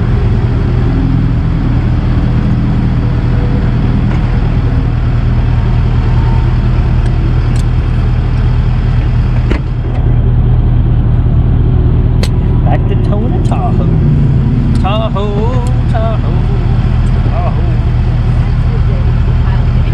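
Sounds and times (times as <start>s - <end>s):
road noise: 0.0s - 19.9s
vehicle engine droning: 0.0s - 19.9s
sharp click: 12.2s - 12.4s.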